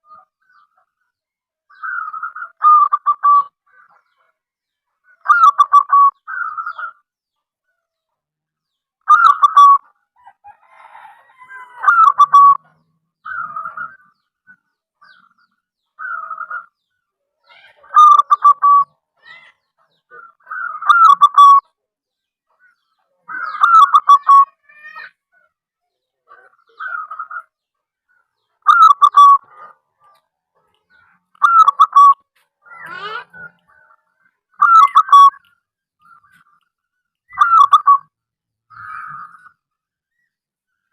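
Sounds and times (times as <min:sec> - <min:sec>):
dove cooing: 0:17.7 - 0:18.9, 0:28.7 - 0:29.7, 0:34.6 - 0:35.4, 0:37.3 - 0:38.0.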